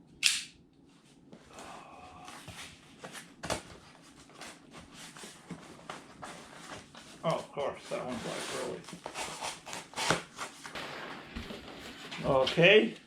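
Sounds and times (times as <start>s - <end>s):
cardboard ripping: 7.9s - 12.5s.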